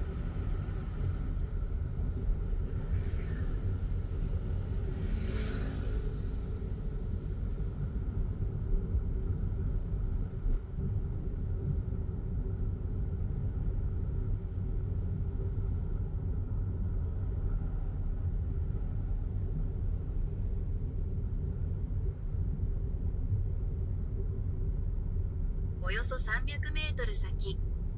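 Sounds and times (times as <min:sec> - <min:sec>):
car road and engine rumble: 0:00.0 - 0:25.8.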